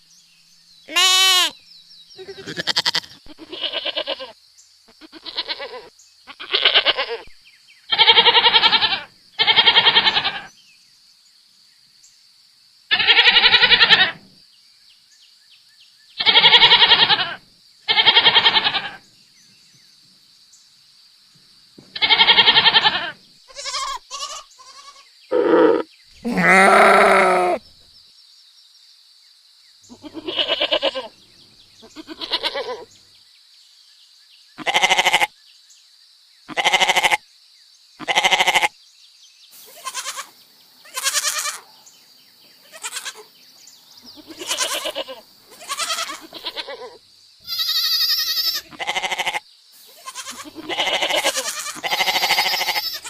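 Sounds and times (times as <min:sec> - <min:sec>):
goats bleating: 0:00.9 - 0:01.5, 0:02.2 - 0:04.3, 0:07.9 - 0:10.5, 0:12.9 - 0:14.2, 0:16.2 - 0:19.0, 0:22.0 - 0:27.6, 0:29.9 - 0:31.1, 0:31.9 - 0:32.8, 0:34.6 - 0:35.3, 0:36.5 - 0:37.2, 0:38.0 - 0:38.7, 0:39.7 - 0:41.6, 0:42.7 - 0:43.2, 0:44.2 - 0:49.4, 0:50.0 - 0:53.0.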